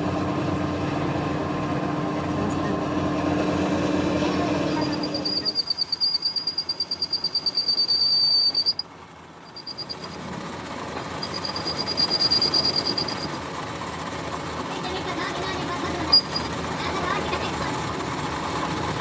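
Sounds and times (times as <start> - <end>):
lathe running: 0.1 - 19.0
lathe tool squealing on metal: 4.6 - 10.4, 11.0 - 13.4, 15.8 - 16.8.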